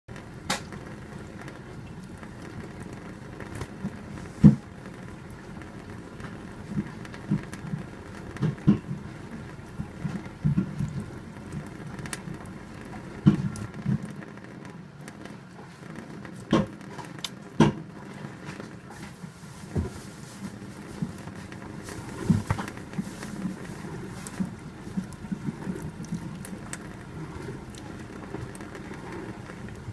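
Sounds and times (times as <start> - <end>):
thin stream of running water: 0.1 - 29.9.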